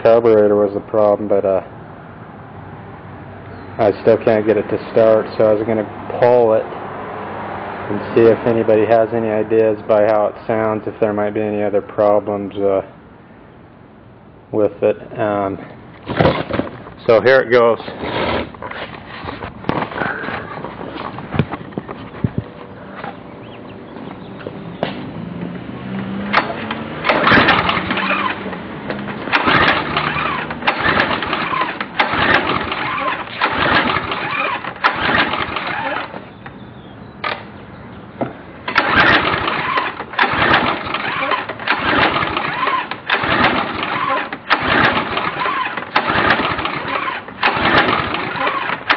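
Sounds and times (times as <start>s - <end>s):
recoil starter pulls: 16.0s - 23.2s, 26.0s - 36.6s, 38.6s - 48.9s.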